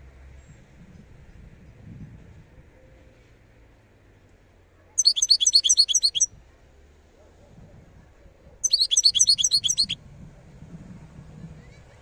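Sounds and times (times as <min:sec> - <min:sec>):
goldfinch twittering: 0:05.0 - 0:06.3, 0:08.6 - 0:10.0.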